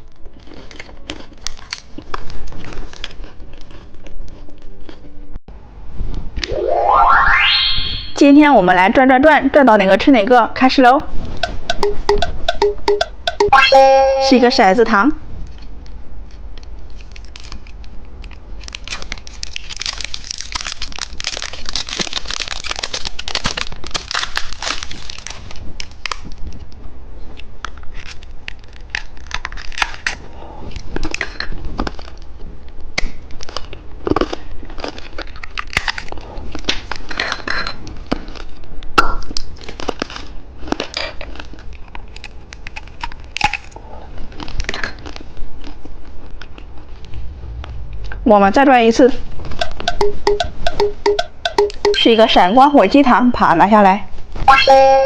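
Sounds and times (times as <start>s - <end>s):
plastic candy wrapper crinkling: 16.3s - 26.8s, 27.6s - 32.3s, 33.0s - 46.9s.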